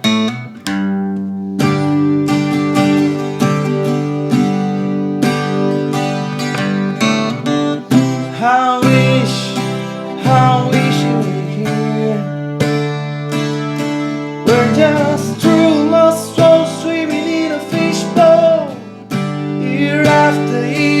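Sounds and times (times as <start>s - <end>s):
acoustic guitar strumming chords: 0.0s - 21.0s
person singing: 7.8s - 13.0s, 14.0s - 21.0s.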